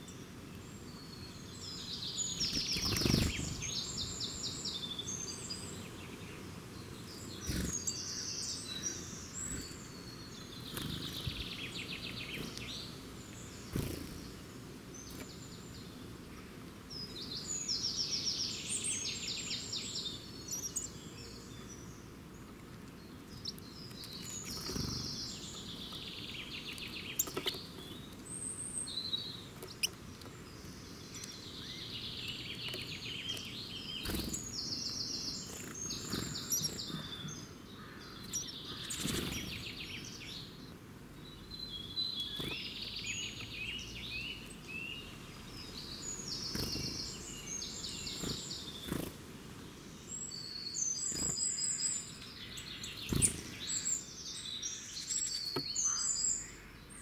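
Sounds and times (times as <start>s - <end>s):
bird chirps: 0.0s - 6.2s, 7.0s - 14.3s, 23.1s - 40.6s, 41.2s - 49.1s, 50.0s - 57.0s
songbird trilling: 50.1s - 57.0s.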